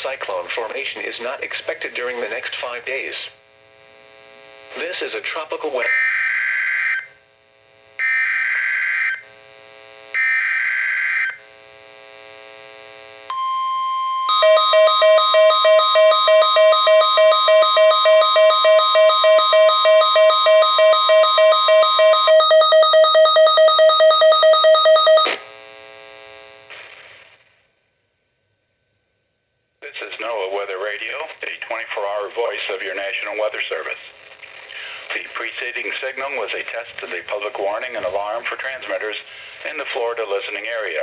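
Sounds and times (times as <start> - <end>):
pulsing alarm beep: 13.3 - 25.4.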